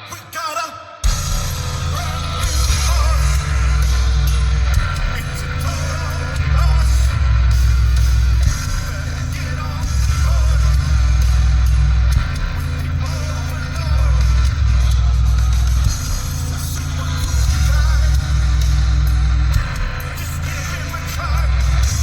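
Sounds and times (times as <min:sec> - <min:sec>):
music with deep subwoofer bass: 0:01.0 - 0:22.0.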